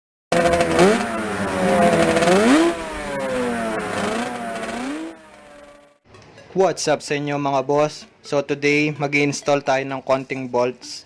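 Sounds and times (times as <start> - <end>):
motorcycle engine revving: 0.3 - 6.0.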